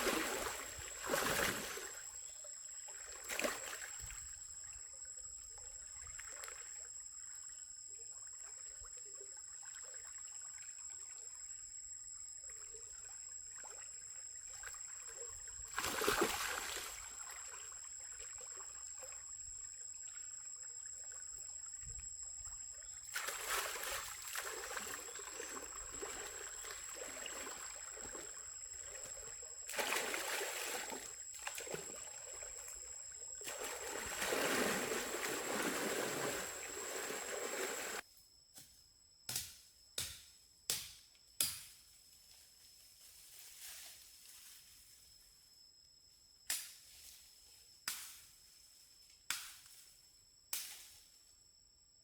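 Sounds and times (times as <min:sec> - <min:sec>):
water trickling and sloshing: 0:00.0 - 0:38.0.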